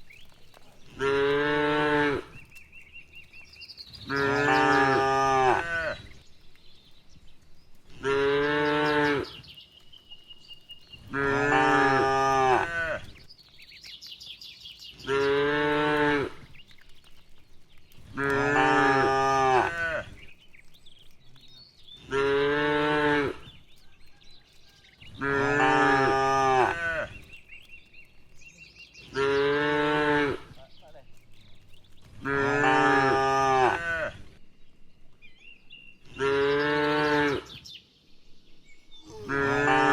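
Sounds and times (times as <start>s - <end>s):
cattle mooing: 0.9s - 2.4s, 4.1s - 6.0s, 11.1s - 13.1s, 18.2s - 20.1s, 25.2s - 27.1s, 32.2s - 34.2s, 39.1s - 39.9s.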